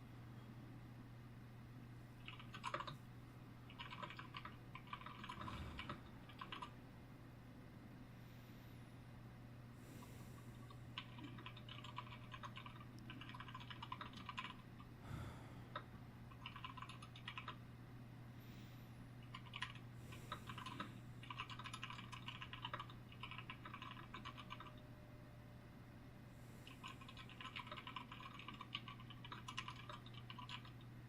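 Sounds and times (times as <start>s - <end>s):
faint low hum: 0.0s - 31.0s
typing on computer keyboard: 2.2s - 3.0s, 3.7s - 6.7s, 11.0s - 14.8s, 16.3s - 17.6s, 19.2s - 24.8s, 26.6s - 30.9s
soft breaths: 5.2s - 6.2s, 8.0s - 11.1s, 14.9s - 16.0s, 18.2s - 19.2s, 19.8s - 21.3s, 26.2s - 27.3s.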